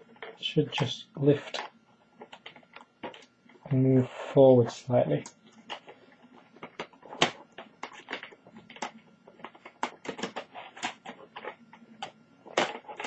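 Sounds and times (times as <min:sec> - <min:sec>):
laptop keyboard plastic clicks and rattles: 0:06.6 - 0:13.0.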